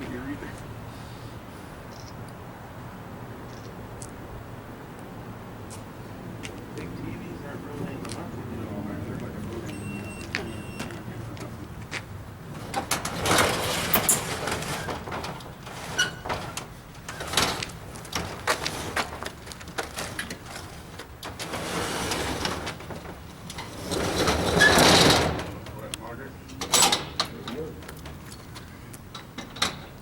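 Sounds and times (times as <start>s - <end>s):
scraping and rustling: 12.5s - 30.0s.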